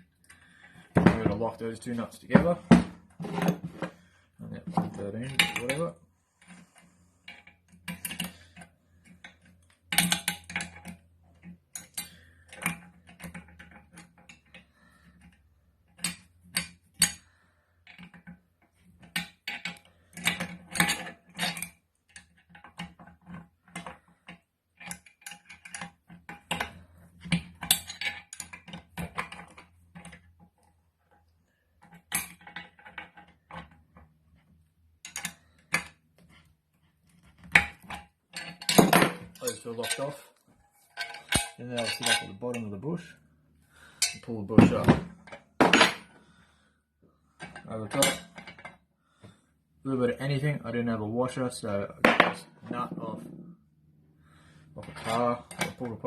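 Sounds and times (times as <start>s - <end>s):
metal nuts and tools clinking: 4.7s - 46.2s, 47.3s - 48.8s, 54.8s - 56.0s.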